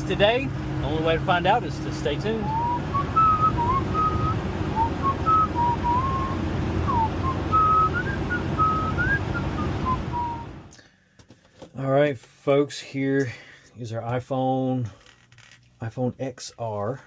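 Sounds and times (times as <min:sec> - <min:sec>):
road noise: 0:00.0 - 0:10.8
van engine droning: 0:00.0 - 0:10.8
person whistling a tune: 0:02.4 - 0:10.5.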